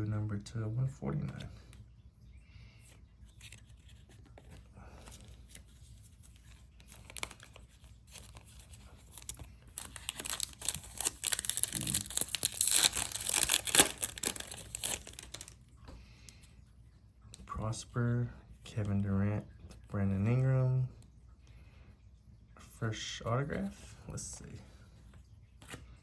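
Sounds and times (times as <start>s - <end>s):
foil pack tearing and crinkling: 6.8s - 15.6s.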